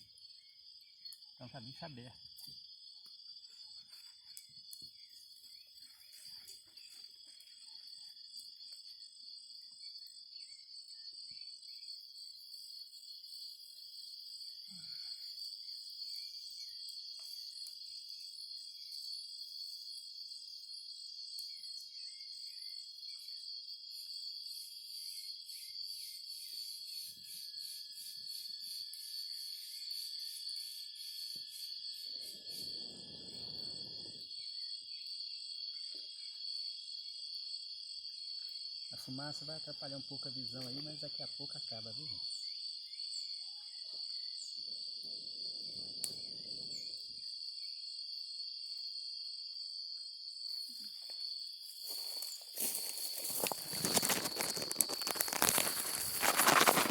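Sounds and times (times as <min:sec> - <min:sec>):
insects chorus: 0:00.0 - 0:56.9
brief rustle: 0:53.0 - 0:56.9.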